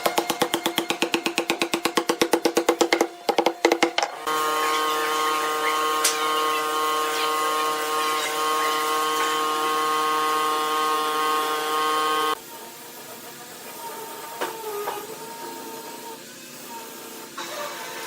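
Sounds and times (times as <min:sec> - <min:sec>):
electric motor whine: 0:04.2 - 0:12.4.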